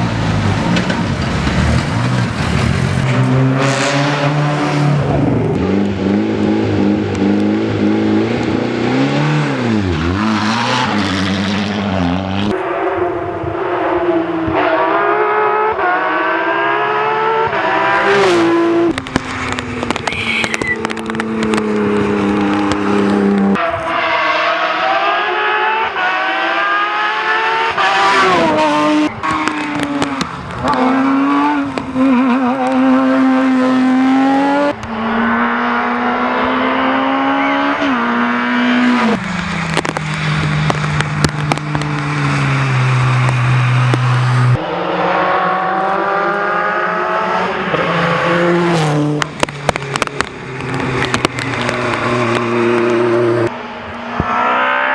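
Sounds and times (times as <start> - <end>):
rally car engines revving: 0.0 - 54.9
sharp cracks: 18.8 - 23.6, 39.2 - 44.4, 49.2 - 53.2.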